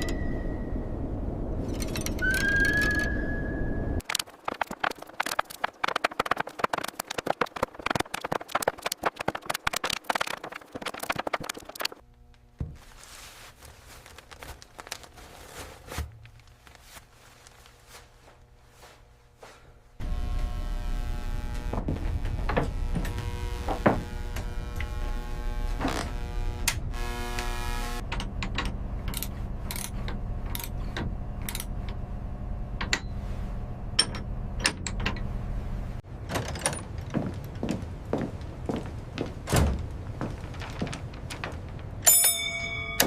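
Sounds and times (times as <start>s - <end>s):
steady mechanical hum: 0.0s - 43.0s
clanks and clicks: 28.0s - 32.0s, 33.9s - 35.3s, 36.2s - 37.6s.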